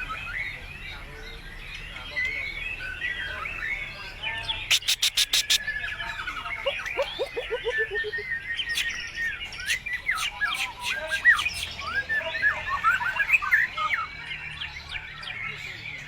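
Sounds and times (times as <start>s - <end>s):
songbird singing varied song: 4.4s - 5.9s, 6.6s - 14.1s.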